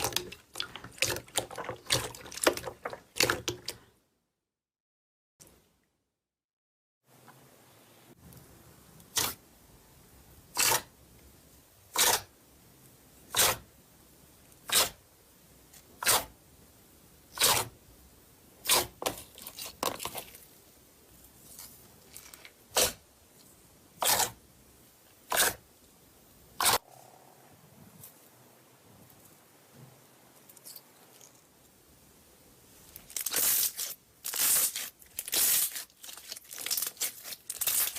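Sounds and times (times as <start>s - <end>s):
slime crackles: 33.0s - 37.9s.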